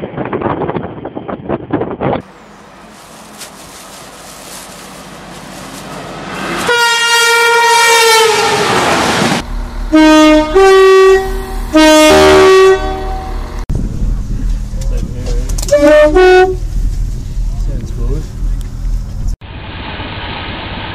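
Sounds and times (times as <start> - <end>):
train rumble: 0.0 - 20.5
loud two-tone train horn: 6.6 - 8.9, 9.9 - 13.6, 15.6 - 16.6
single-tone train horn: 6.6 - 8.9, 9.9 - 13.6, 15.6 - 16.7.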